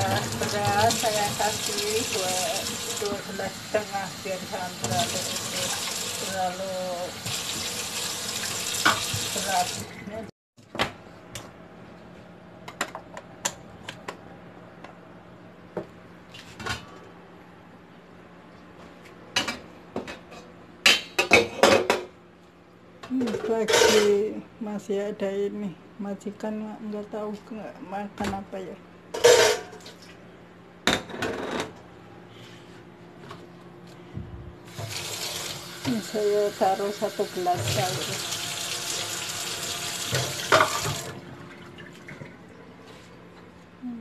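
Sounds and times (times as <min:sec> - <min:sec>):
steady low hum: 0:31.8 - 0:34.7.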